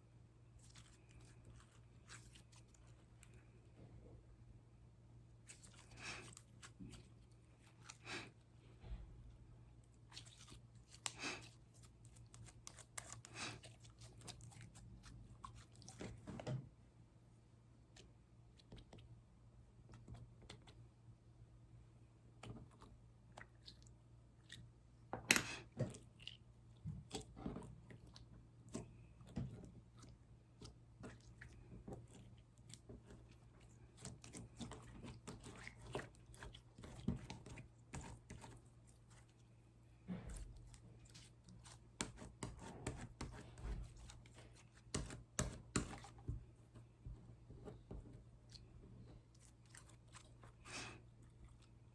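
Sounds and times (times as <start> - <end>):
slime squelching by hand: 0.5 - 3.6, 5.4 - 8.4, 9.9 - 16.5, 25.5 - 51.9.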